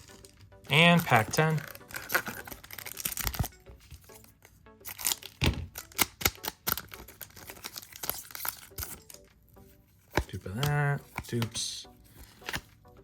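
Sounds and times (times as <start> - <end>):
foil pack crackling and tearing: 0.0 - 4.2, 4.9 - 9.3
background music: 0.0 - 13.0.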